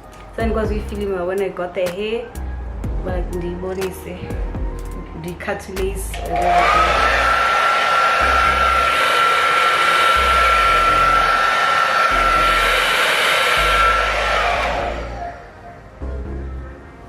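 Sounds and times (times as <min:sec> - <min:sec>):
hair dryer blowing: 0:06.1 - 0:15.5.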